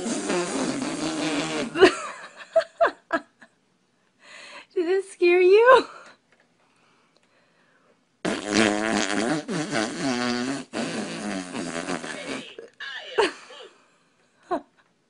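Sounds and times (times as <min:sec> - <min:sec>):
long loud fart: 0:00.0 - 0:02.0, 0:08.2 - 0:12.7.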